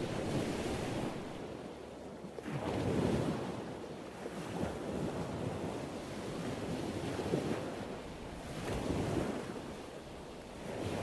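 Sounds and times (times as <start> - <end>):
ocean waves crashing: 0.0 - 1.6.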